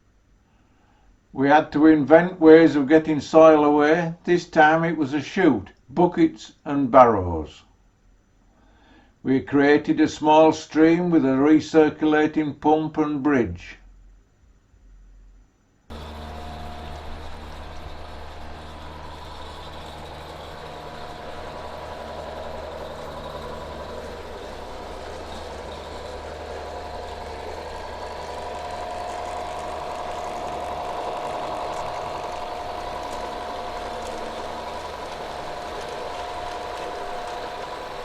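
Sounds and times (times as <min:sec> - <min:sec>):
low hum: 0:15.9 - 0:38.0
model locomotive whine: 0:15.9 - 0:38.0.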